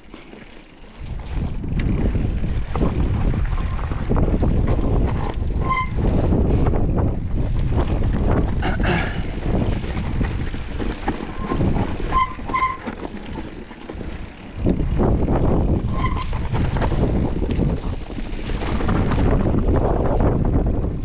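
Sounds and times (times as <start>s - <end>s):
bike tyres rumbling over trail: 0.0s - 21.0s
wind buffeting the microphone: 1.0s - 21.0s
short squeaks: 5.6s - 6.0s, 11.3s - 13.5s, 15.8s - 16.4s.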